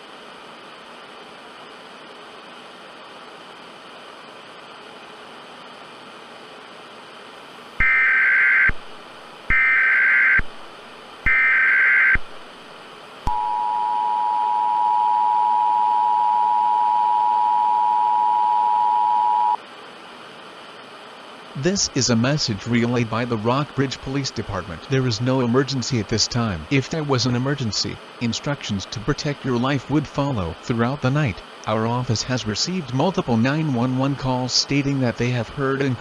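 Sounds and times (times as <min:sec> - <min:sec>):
constant hiss: 0:00.0 - 0:36.0
two-tone attention signal: 0:13.3 - 0:19.6.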